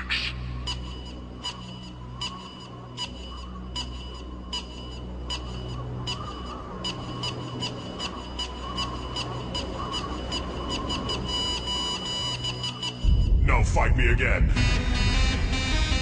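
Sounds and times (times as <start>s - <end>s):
electronic instrumental music: 14.4s - 16.0s.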